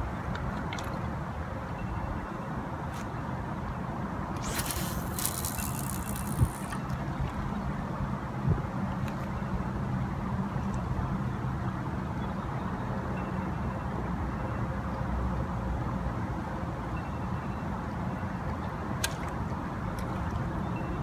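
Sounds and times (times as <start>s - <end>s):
sharp click: 4.4s - 6.9s.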